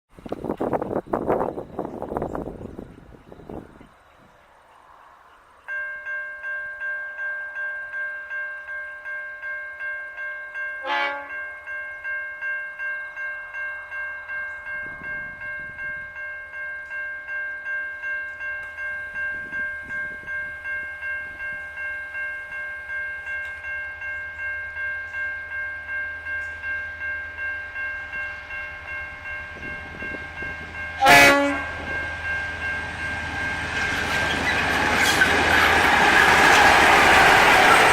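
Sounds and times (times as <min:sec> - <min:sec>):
level-crossing warning bell ringing: 0:05.3 - 0:37.9
locomotive horn toots: 0:10.8 - 0:11.4, 0:31.0 - 0:32.2
train rumble: 0:25.4 - 0:37.9.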